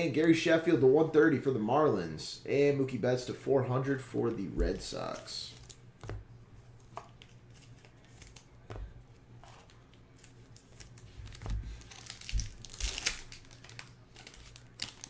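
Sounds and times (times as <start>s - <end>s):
wrappers rustling and tearing: 5.0s - 5.9s, 9.5s - 15.0s.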